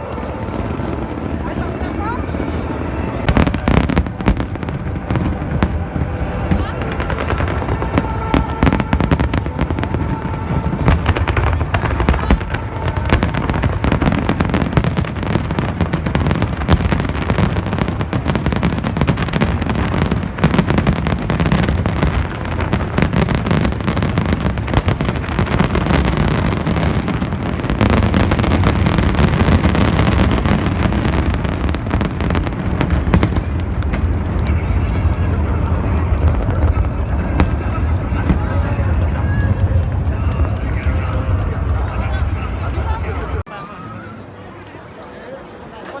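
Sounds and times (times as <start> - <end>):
fireworks bangs and crackles: 0.0 - 43.5.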